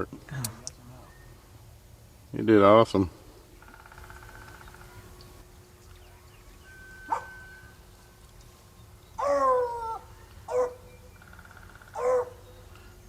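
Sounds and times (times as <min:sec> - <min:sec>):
wild turkeys yelping: 0:03.6 - 0:05.1, 0:09.2 - 0:12.9.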